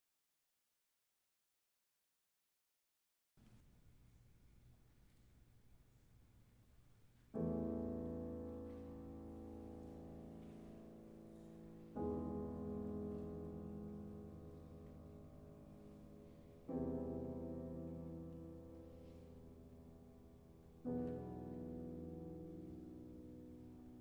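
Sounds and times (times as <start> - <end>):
slow piano chords: 7.2 - 24.0.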